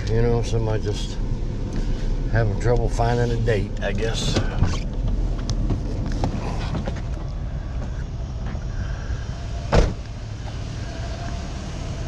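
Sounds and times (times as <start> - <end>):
vehicle engine rumbling: 0.0 - 12.0
sharp thump: 9.7 - 10.0.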